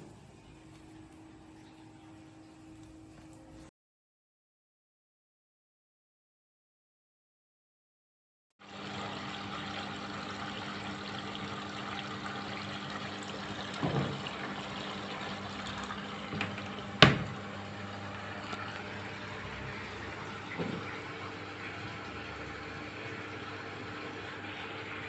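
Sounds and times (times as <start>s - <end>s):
water running into washing machine: 0.0s - 3.4s, 8.6s - 25.0s
faint steady hum: 0.0s - 3.7s.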